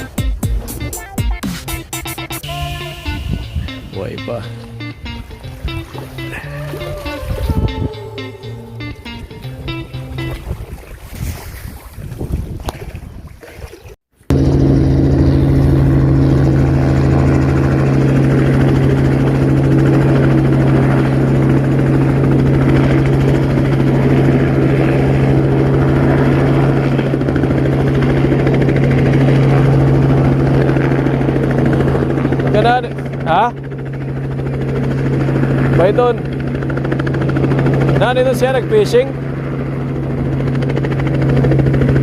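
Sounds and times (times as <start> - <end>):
steady engine drone: 0.0 - 10.4, 14.2 - 42.0
wind buffeting microphone: 5.0 - 13.7.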